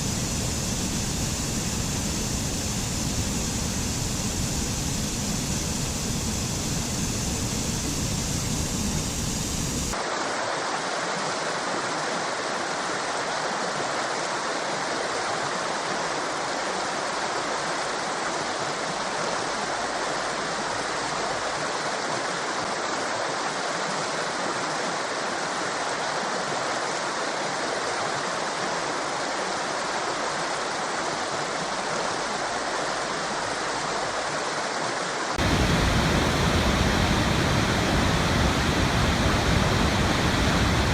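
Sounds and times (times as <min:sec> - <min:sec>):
waterfall rushing: 0:00.0 - 0:10.1, 0:35.4 - 0:40.9.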